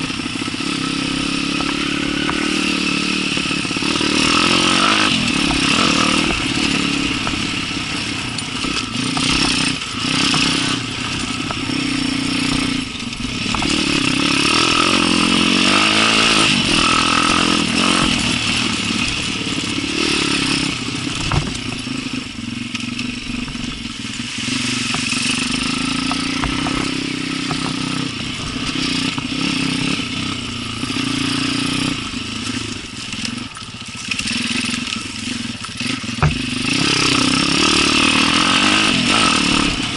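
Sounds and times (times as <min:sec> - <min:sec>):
motorcycle engine revving: 0:00.0 - 0:39.9
knocks and rattles: 0:21.1 - 0:22.0, 0:36.1 - 0:37.7.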